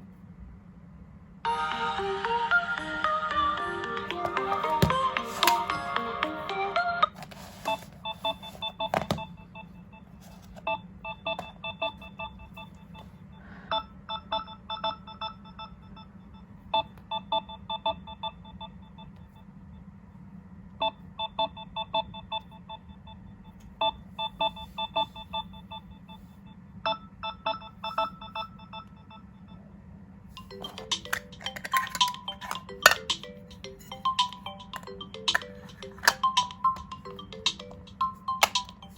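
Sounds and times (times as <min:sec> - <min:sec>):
low steady hum: 0:00.0 - 0:38.9
melodic ringtone alarm: 0:01.5 - 0:15.9, 0:30.4 - 0:38.9
phone alarm beeping: 0:03.9 - 0:16.1, 0:23.8 - 0:26.2, 0:26.9 - 0:29.3, 0:30.4 - 0:38.9.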